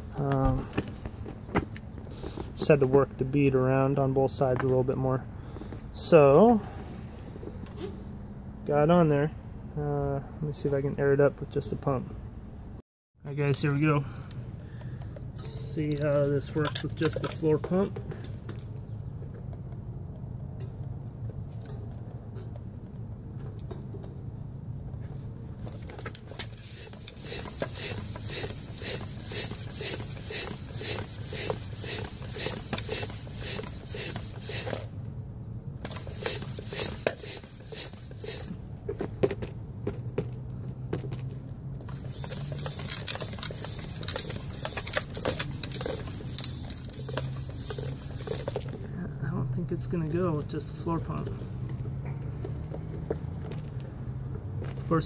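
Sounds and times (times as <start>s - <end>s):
floor pump hissing strokes: 26.3s - 34.9s, 35.8s - 38.6s, 41.8s - 48.8s.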